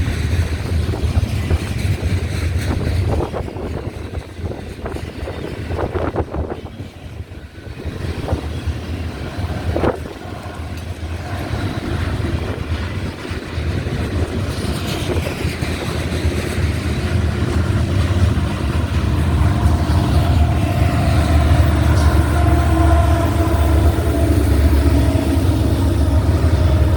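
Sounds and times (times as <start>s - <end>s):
freight train rumbling past: 0.0s - 26.9s
wind buffeting microphone: 0.0s - 26.9s.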